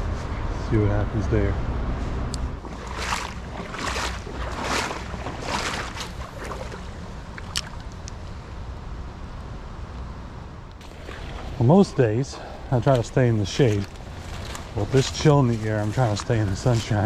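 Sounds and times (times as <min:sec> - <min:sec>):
water splashing rhythmically: 0:02.6 - 0:08.0, 0:10.8 - 0:17.0.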